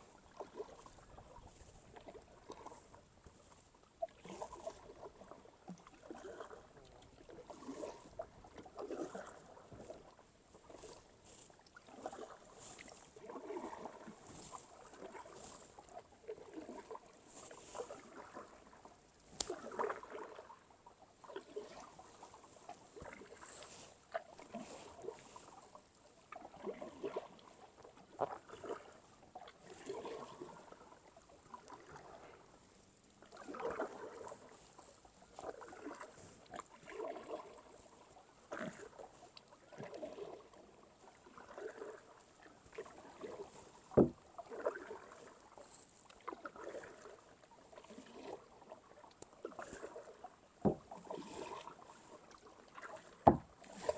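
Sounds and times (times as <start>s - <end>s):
paddle swishing through water: 0.0s - 53.9s
paddle knocking kayak hull: 43.9s - 45.1s, 50.6s - 51.2s, 52.8s - 53.9s.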